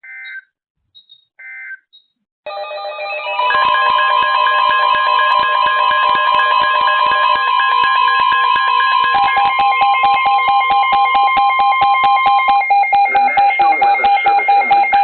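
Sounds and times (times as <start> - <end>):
rapid electronic alarm beeps: 0.0 - 2.1, 3.5 - 15.0
steady warning alarm tone: 2.5 - 15.0
synthesized voice speaking: 12.9 - 15.0.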